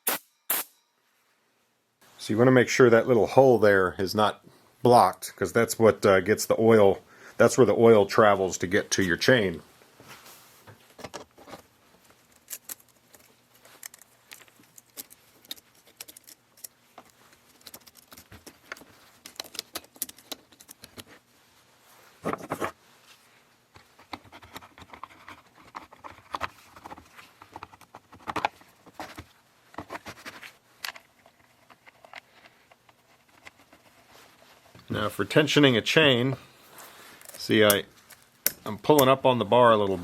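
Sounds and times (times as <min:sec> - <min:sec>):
metallic clicks and rattles of parts: 0:12.2 - 0:21.1.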